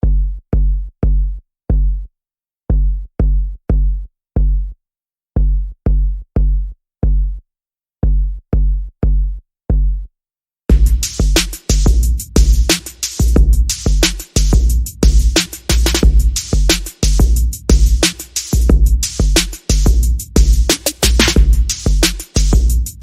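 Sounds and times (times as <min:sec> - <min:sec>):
deep bass notes: 0:10.7 - 0:23.0
electronic music with drums: 0:10.7 - 0:23.0.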